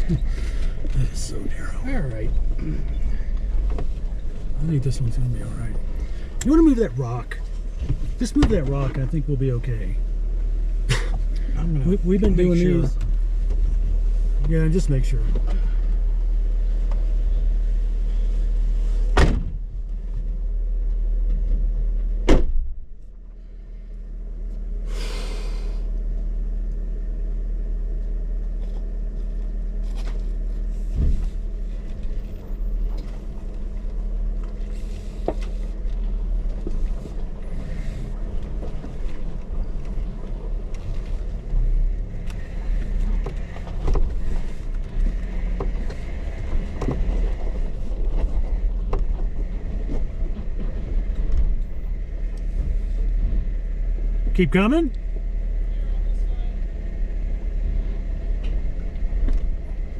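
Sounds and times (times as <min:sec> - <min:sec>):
engine low rumble: 0:00.0 - 0:59.9.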